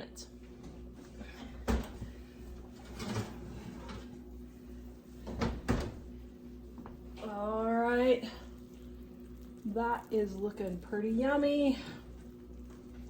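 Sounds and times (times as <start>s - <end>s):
steady low hum: 0.0s - 13.0s
kitchen clunks and knocks: 1.6s - 2.2s, 2.8s - 4.1s, 5.2s - 6.1s.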